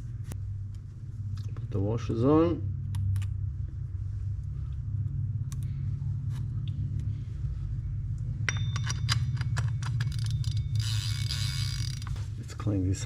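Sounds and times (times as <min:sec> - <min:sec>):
steady low hum: 0:00.0 - 0:13.0
metal reel parts clicking: 0:08.5 - 0:12.2.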